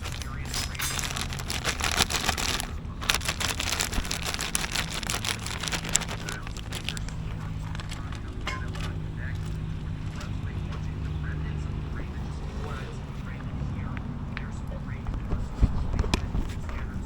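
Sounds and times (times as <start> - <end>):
crinkling and rustling with clicks: 0.0 - 10.9, 14.9 - 17.0.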